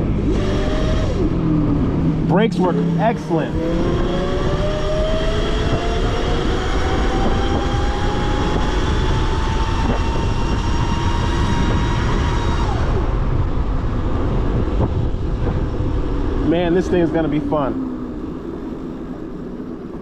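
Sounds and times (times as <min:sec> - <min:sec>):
wind rumble on microphone: 0:00.0 - 0:20.0
electric dirt bike motor whining: 0:03.2 - 0:13.4.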